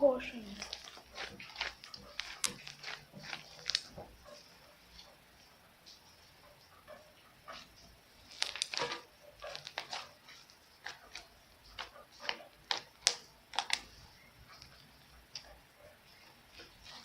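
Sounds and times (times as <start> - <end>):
slime clicking and popping: 0.5 - 4.0, 8.3 - 10.0, 10.8 - 14.0.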